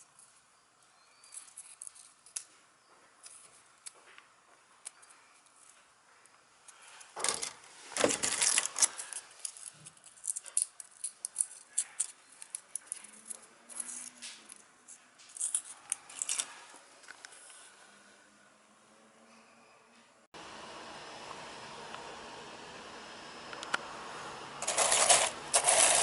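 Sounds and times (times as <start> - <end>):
small hard objects clicking and rattling: 1.2 - 2.5, 8.2 - 16.5, 24.6 - 26.0.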